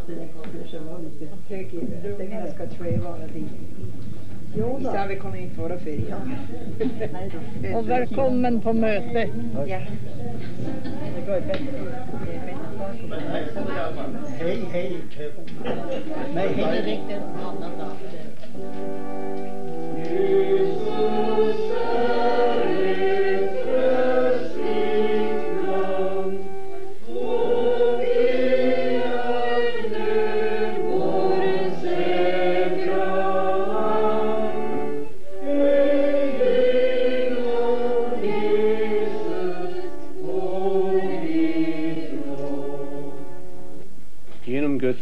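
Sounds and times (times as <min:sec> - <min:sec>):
group singing a hymn: 0:15.6 - 0:43.8.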